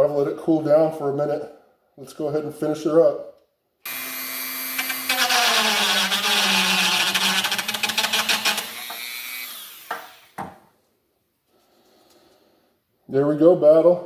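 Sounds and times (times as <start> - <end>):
rotary tool grinding: 3.9 - 10.4.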